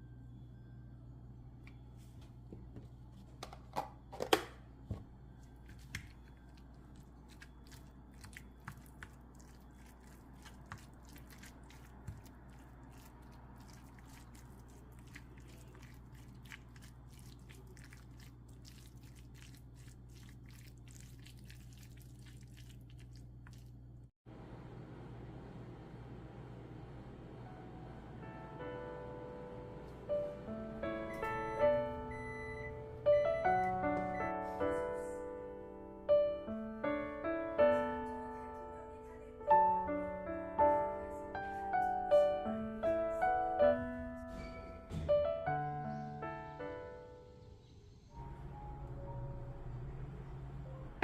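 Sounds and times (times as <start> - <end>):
low hum: 0.0 - 3.2, 47.7 - 51.0
person chewing: 6.0 - 23.9.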